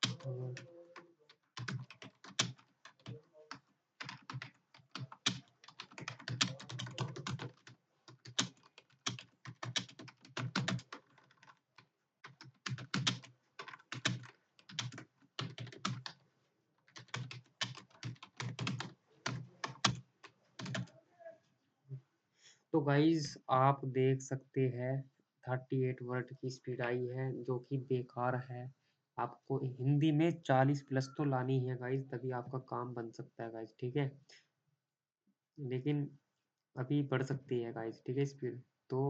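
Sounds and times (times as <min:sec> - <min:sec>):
computer keyboard typing: 0:00.0 - 0:16.2, 0:16.8 - 0:20.9.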